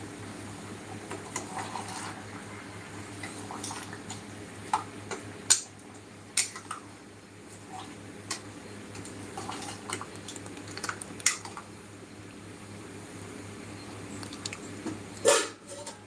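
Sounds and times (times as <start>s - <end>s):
low steady hum: 0.0s - 16.0s
metal utensils clinking on pot: 15.2s - 16.0s.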